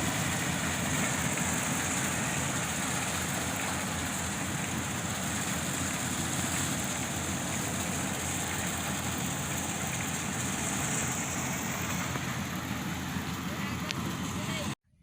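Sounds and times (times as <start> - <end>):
harvester running: 0.0 - 14.8.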